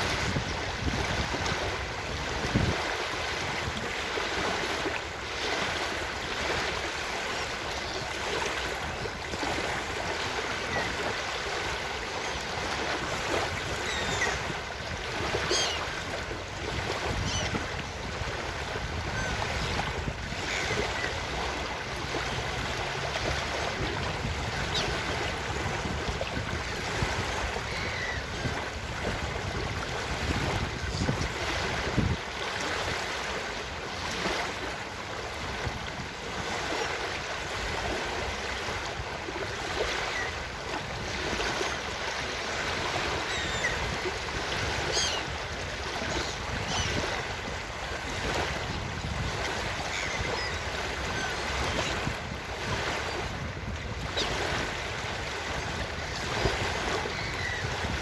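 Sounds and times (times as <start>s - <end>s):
wind buffeting microphone: 0.0s - 5.0s, 8.5s - 32.7s, 37.4s - 58.0s
ocean surf washing: 0.0s - 58.0s
seagull calls: 13.6s - 14.6s, 15.3s - 16.0s, 17.1s - 17.7s, 20.4s - 21.2s, 27.6s - 28.6s, 43.0s - 44.0s, 44.8s - 45.3s, 46.0s - 47.2s, 49.8s - 51.9s, 57.1s - 57.7s.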